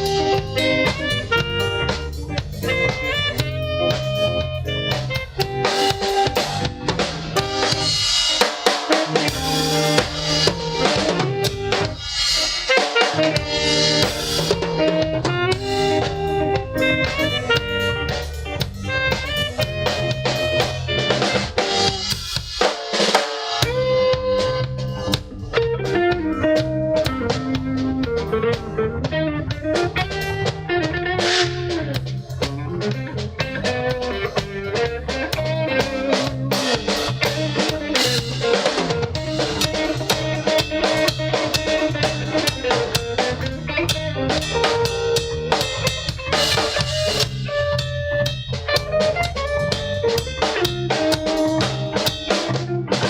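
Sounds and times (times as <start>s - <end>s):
melodic lead line: 0.0s - 22.2s, 25.4s - 53.0s
drum kit beat: 0.0s - 53.0s
instrumental band music: 0.0s - 53.0s.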